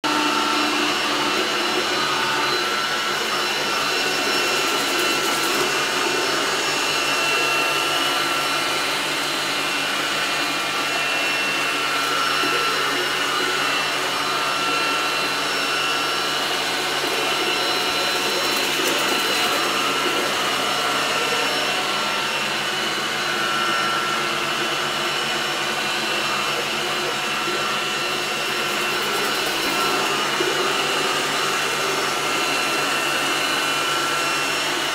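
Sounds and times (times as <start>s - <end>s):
robot vacuum cleaner running: 0.0s - 34.9s.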